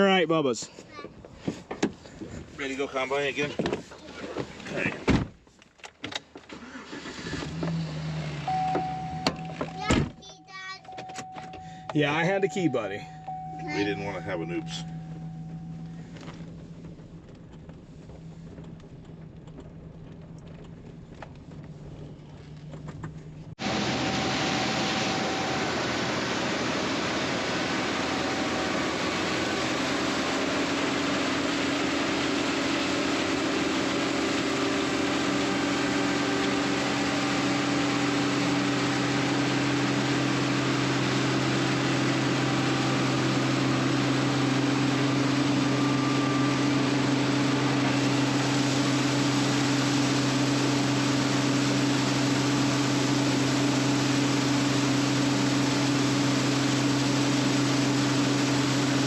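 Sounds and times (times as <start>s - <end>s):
farm machinery running: 21.0s - 59.0s.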